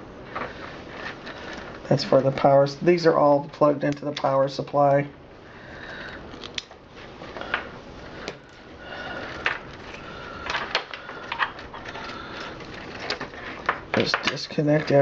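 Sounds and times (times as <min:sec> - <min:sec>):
scrapes: 0:00.3 - 0:02.8, 0:06.9 - 0:15.0.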